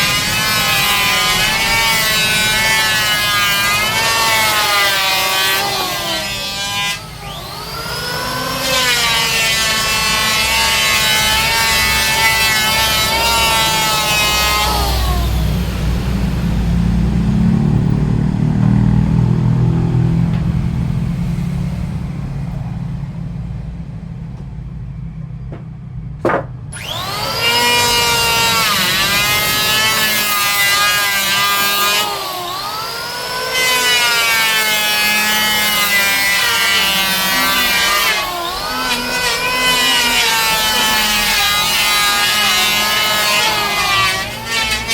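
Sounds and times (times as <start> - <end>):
power tool motor whining: 0.0 - 15.7, 26.4 - 44.9.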